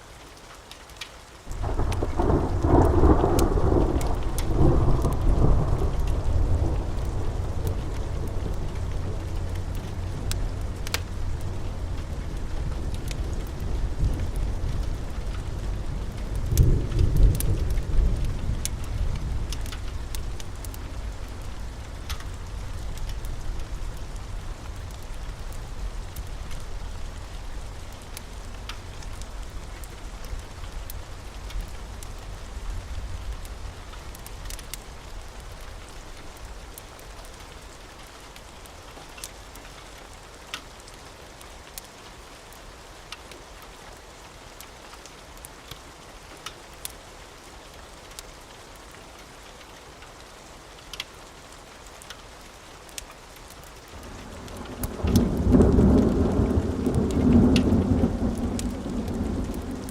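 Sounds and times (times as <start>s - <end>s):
steady rain: 0.0s - 59.9s
wood fire crackling: 0.1s - 59.9s
thunder rumbling: 1.5s - 33.8s, 54.0s - 59.9s.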